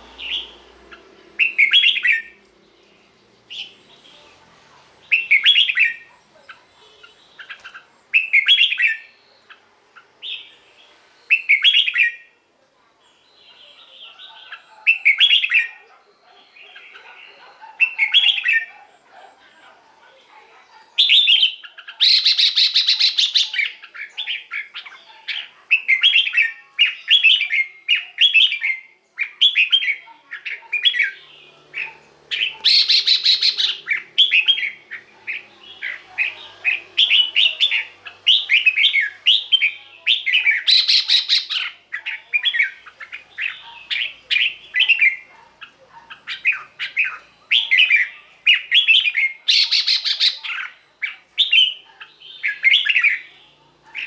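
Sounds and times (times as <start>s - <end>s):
bird whistled song: 0.0s - 2.4s, 5.0s - 6.1s, 7.0s - 9.2s, 11.3s - 12.3s, 14.9s - 15.7s, 21.0s - 31.2s, 31.8s - 53.3s
harsh rasping bird calls: 0.0s - 10.7s, 20.6s - 54.0s.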